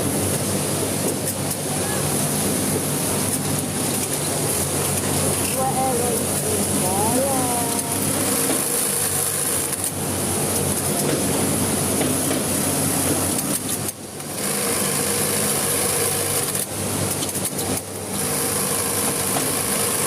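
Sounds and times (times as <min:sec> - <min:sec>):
electric sewing machine running: 0:14.3 - 0:16.6, 0:18.1 - 0:20.0.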